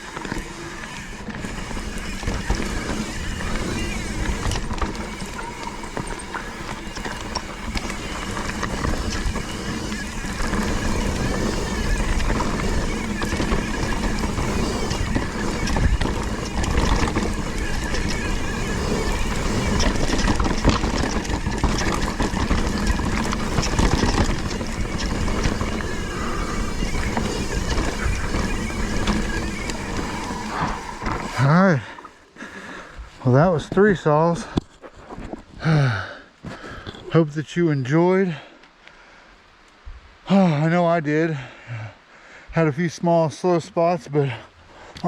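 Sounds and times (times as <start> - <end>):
bike rattling over bumps: 0.0 - 35.5
bike tyres on dirt: 0.0 - 37.3.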